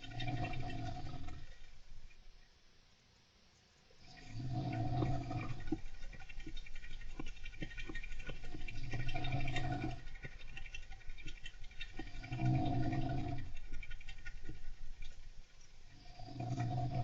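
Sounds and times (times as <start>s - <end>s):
slow snoring: 0.0s - 1.8s, 4.0s - 6.2s, 8.7s - 10.2s, 12.0s - 13.7s, 15.9s - 17.0s.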